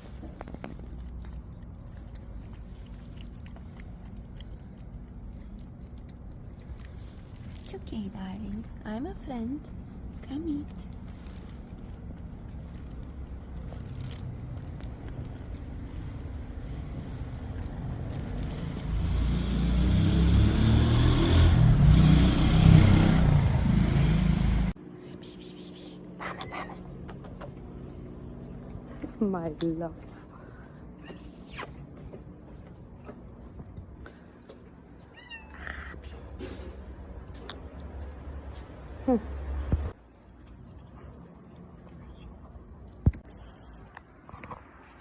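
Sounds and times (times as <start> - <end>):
low steady rumble: 0.0 - 18.9
road noise: 0.0 - 24.8, 35.9 - 45.0
cats crunching dry food: 0.1 - 8.8, 9.8 - 18.9, 39.9 - 43.1.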